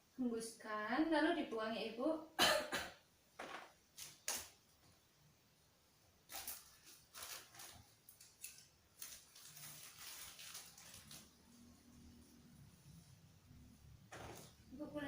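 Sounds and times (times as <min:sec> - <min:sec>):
woman coughing breathily: 0:02.4 - 0:03.0.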